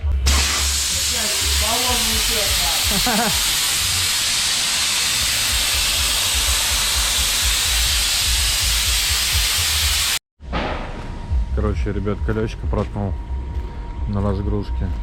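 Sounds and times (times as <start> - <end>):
compressed air hissing: 0.3 - 10.2
low rumbling thumps: 10.4 - 15.0.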